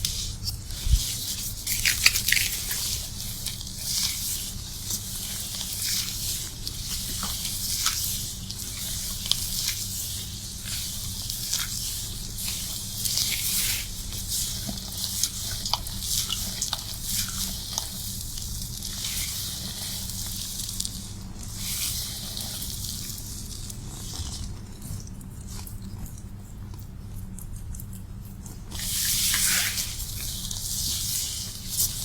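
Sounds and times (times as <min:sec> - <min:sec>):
wet hair squishing and crackling: 0:00.0 - 0:25.5.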